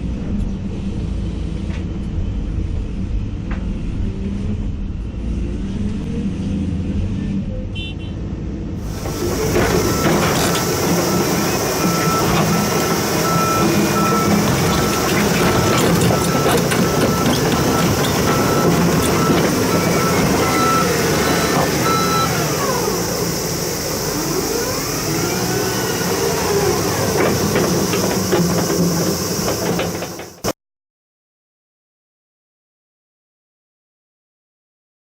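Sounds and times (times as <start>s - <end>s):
rising and falling squeaks: 8.8s - 30.5s
excavator engine running: 8.8s - 30.6s
travel alarm beeping: 8.9s - 23.0s.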